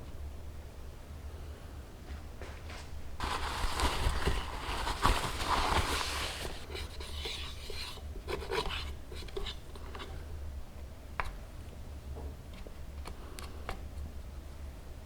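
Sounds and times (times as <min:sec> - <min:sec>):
scrubbing against hard surface: 0:03.2 - 0:07.5.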